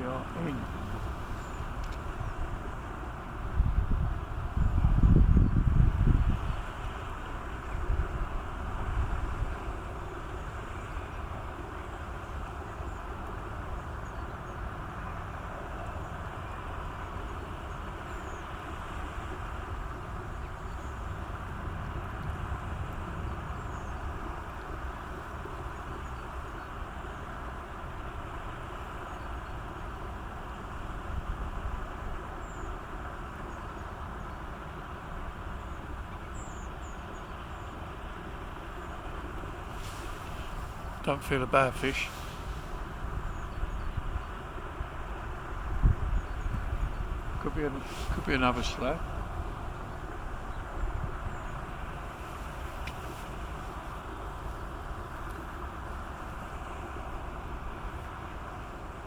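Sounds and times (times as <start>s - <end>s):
wind buffeting microphone: 0.0s - 11.3s, 37.2s - 59.0s
low rumble and hiss: 0.0s - 59.0s.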